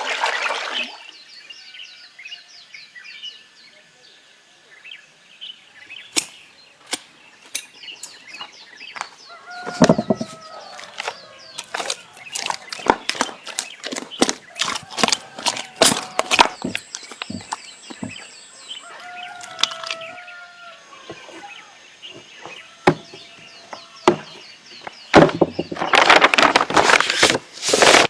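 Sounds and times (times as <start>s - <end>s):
bird chirps: 4.7s - 26.0s.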